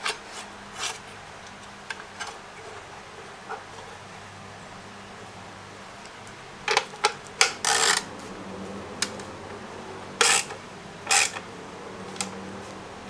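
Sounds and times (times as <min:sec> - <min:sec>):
sharp metallic clicks: 0:07.4 - 0:08.1, 0:10.2 - 0:11.5
ratchet rasping: 0:07.4 - 0:08.2, 0:10.2 - 0:12.5.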